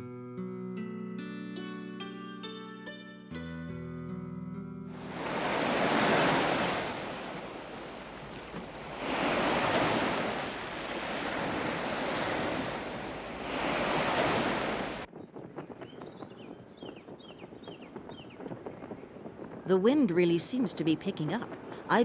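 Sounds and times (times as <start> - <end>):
surf: 4.9 - 15.1
rushing wind: 4.9 - 22.0.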